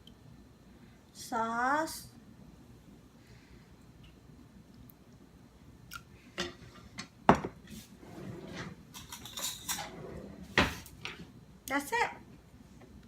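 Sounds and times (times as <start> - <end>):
utensils scraping dishes: 8.0 - 10.4
utensils clinking on dishes: 8.9 - 10.0.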